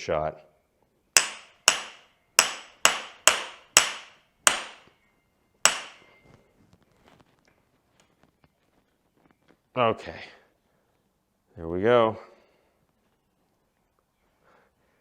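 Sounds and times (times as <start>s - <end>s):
hammer striking metal screwdriver: 1.2s - 4.9s, 5.7s - 6.1s.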